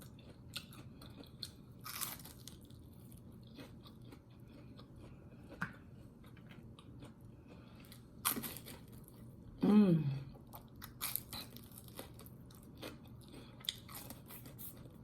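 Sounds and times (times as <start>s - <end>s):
quiet chewing: 0.0s - 9.3s
crisp crunch: 0.1s - 4.2s.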